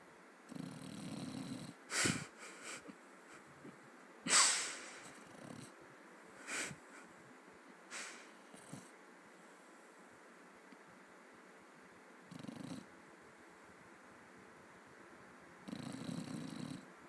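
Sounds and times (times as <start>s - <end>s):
pet snoring: 0.5s - 2.2s, 4.8s - 5.8s, 8.0s - 8.9s, 12.3s - 12.9s, 15.6s - 16.9s.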